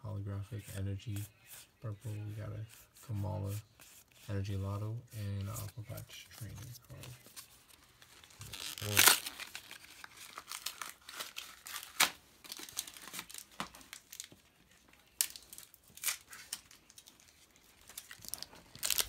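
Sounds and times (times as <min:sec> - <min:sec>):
foil wrapper crinkling and tearing: 0:07.9 - 0:14.4, 0:15.1 - 0:19.0.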